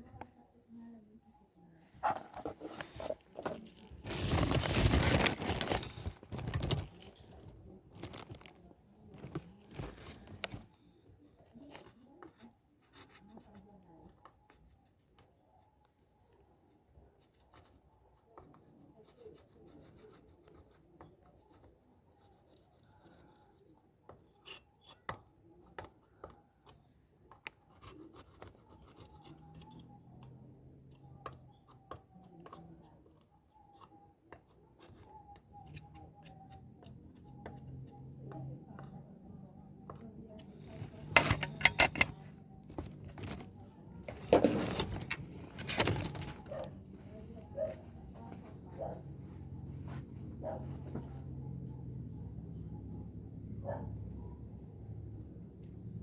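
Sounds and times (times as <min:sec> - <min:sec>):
light rubbing and scraping: 0:01.7 - 0:14.0, 0:26.1 - 0:51.8.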